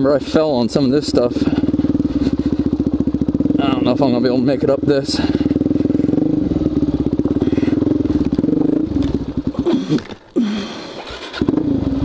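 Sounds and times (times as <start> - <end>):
motorcycle engine pulling hard: 0.0 - 12.0
electric starter cranking: 10.9 - 11.5.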